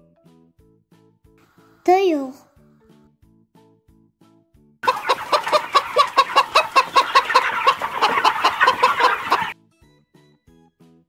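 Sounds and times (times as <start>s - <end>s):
chicken clucking: 4.8s - 9.6s.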